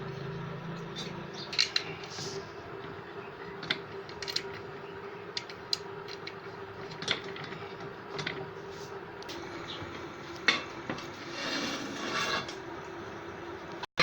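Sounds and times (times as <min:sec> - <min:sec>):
steady hum: 0:00.0 - 0:13.9.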